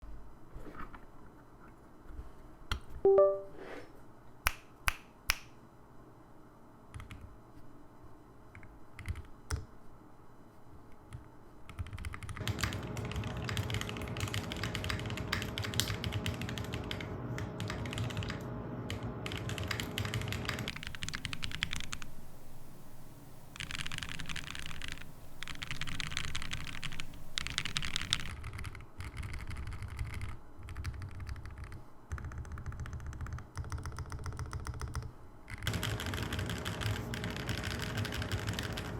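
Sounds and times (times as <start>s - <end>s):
mechanical keyboard typing: 8.6s - 9.6s, 11.1s - 22.1s, 23.6s - 38.9s.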